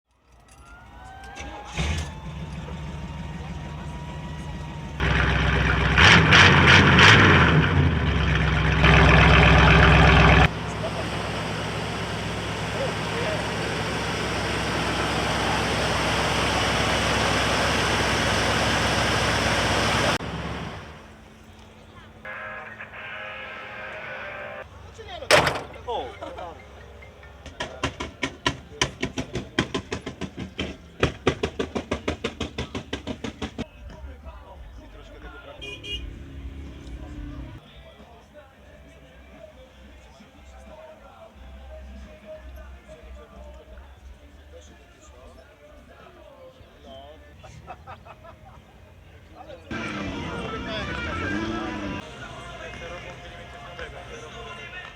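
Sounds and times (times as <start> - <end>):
engine throttle blips: 1.0 - 24.6, 25.3 - 27.6, 49.7 - 54.9
car engine idling: 1.4 - 22.2, 24.7 - 27.5, 49.7 - 54.9.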